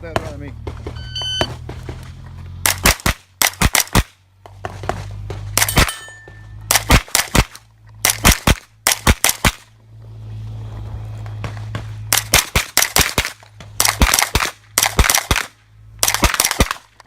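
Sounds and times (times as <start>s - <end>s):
carbine gunshots: 2.6s - 4.2s, 12.1s - 16.9s.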